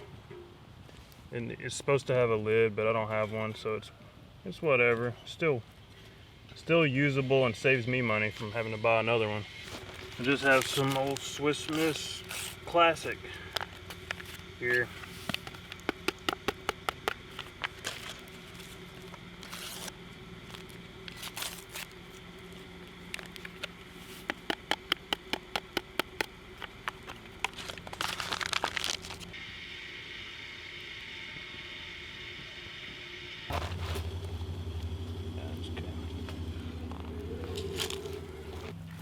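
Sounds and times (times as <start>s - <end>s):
packet crinkling and rustling: 9.6s - 29.4s, 37.4s - 39.0s.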